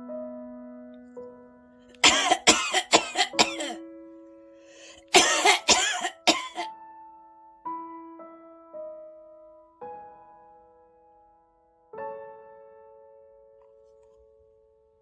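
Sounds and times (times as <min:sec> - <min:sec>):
soft piano music: 0:00.0 - 0:15.0
person coughing: 0:02.0 - 0:03.8, 0:04.8 - 0:06.7.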